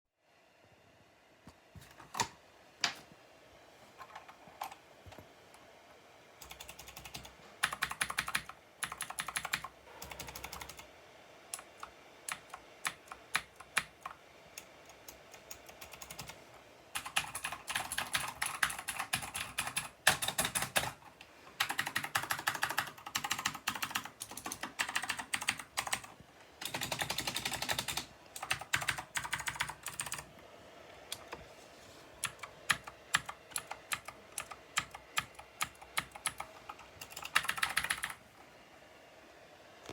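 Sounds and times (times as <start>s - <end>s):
clicky mechanical keyboard typing: 6.4s - 10.9s, 11.5s - 16.4s, 17.0s - 30.3s, 32.2s - 38.2s.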